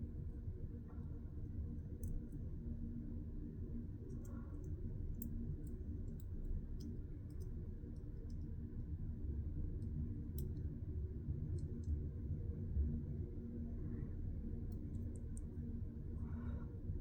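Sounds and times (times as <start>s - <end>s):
low steady hum: 0.0s - 17.0s
light clicks of screwdriver and metal: 4.1s - 8.5s.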